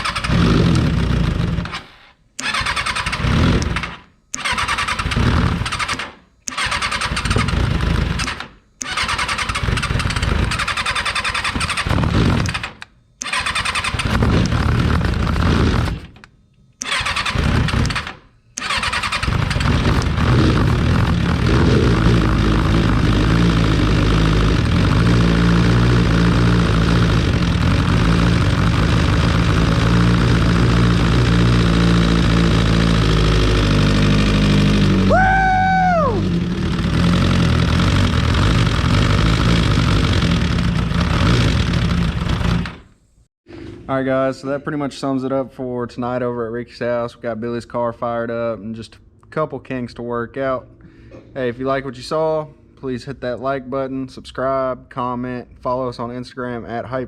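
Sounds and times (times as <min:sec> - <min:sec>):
motorcycle engine revving: 0:00.0 - 0:16.2, 0:16.8 - 0:42.9.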